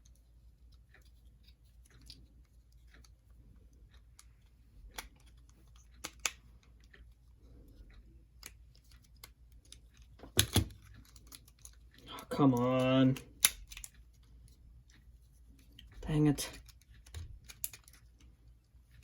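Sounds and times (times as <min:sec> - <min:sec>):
plastic parts clicking: 0:03.9 - 0:07.1, 0:07.8 - 0:14.6, 0:15.7 - 0:18.3.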